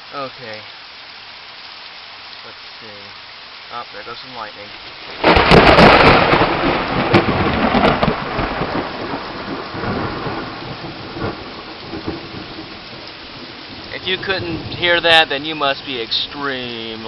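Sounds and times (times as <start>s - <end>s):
steady rain: 0.0s - 17.0s
thunder crack and rumble: 5.1s - 15.4s.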